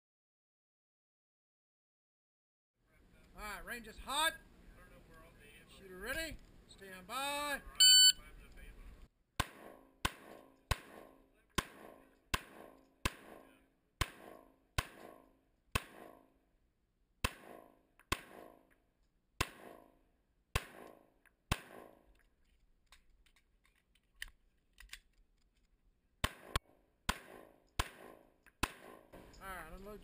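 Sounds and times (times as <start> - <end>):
faint clicks: 8.4 - 9.1
handgun shots with echo: 20.6 - 22.0, 26.2 - 29.3.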